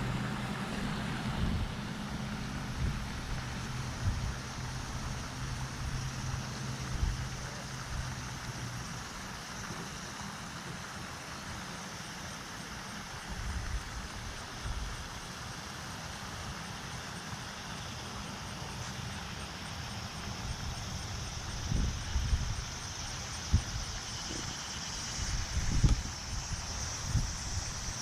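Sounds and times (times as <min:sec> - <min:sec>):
wind buffeting microphone: 0:00.0 - 0:08.1, 0:20.5 - 0:24.6, 0:25.2 - 0:28.0
steady hiss: 0:00.0 - 0:28.0.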